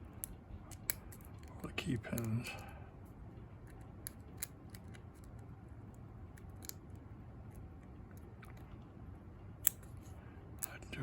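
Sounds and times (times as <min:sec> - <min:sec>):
low background hum: 0:00.0 - 0:11.0
lock pick clicking and scraping: 0:03.6 - 0:05.4.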